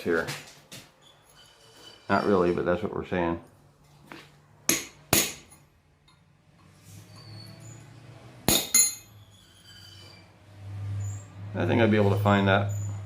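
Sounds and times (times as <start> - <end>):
hammer striking metal punch: 4.7 - 5.6, 8.5 - 9.1.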